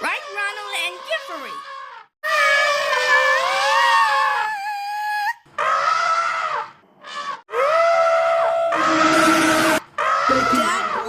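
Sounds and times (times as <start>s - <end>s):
elephant trumpeting: 0.0s - 11.0s.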